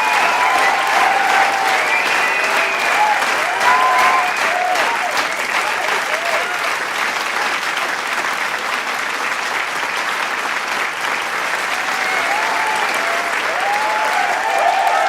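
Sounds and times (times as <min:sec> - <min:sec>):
people cheering and whooping: 0:00.0 - 0:06.7, 0:11.7 - 0:15.0
crowd applauding: 0:00.0 - 0:15.0.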